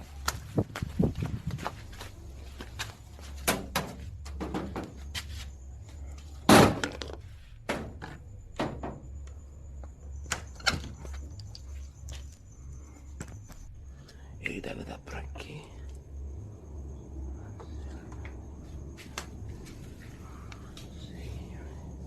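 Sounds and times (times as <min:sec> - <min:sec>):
knocks and thuds: 0:03.4 - 0:05.0, 0:06.5 - 0:09.1.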